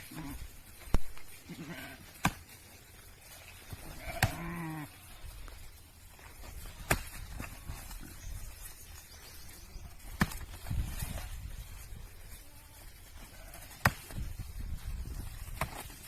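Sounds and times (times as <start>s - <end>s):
animal bleating: 0.0s - 0.6s, 1.3s - 2.2s, 3.7s - 5.2s, 12.4s - 13.9s.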